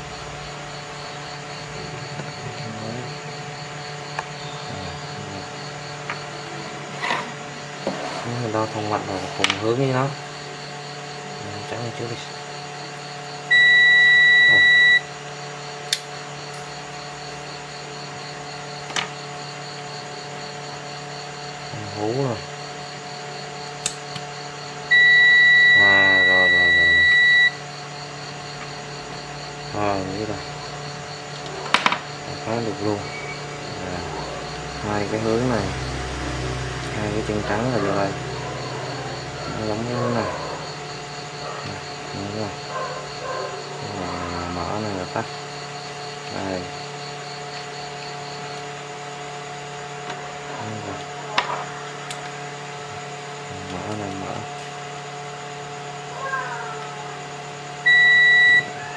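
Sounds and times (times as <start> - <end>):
steady hum: 0.0 - 56.3, 57.0 - 58.9
multimeter continuity beep: 13.4 - 15.2, 24.8 - 27.7, 57.8 - 58.9.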